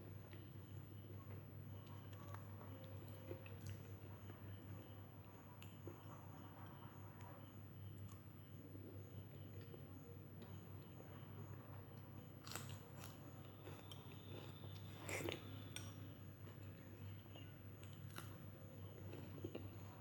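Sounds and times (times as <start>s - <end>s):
person chewing food: 12.4s - 20.0s.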